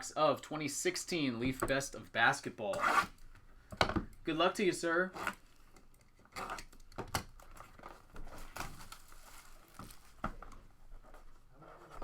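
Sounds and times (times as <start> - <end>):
packaging crinkling: 7.4 - 10.2.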